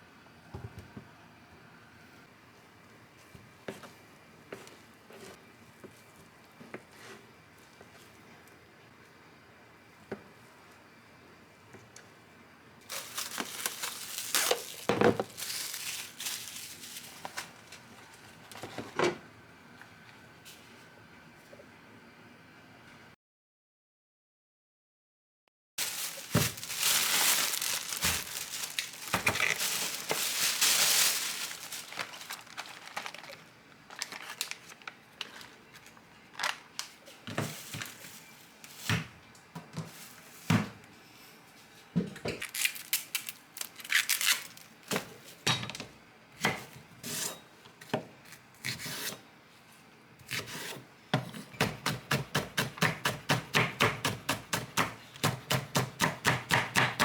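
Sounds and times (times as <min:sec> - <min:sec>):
packaging crinkling and tearing: 0:12.9 - 0:17.9, 0:25.8 - 0:37.0, 0:42.4 - 0:44.9
knife chopping on cutting board: 0:50.3 - 0:57.0.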